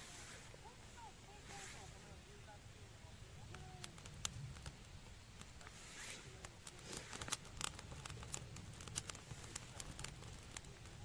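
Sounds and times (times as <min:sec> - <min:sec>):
wood fire crackling and popping: 0:03.2 - 0:11.0
short rising hiss: 0:05.7 - 0:06.4.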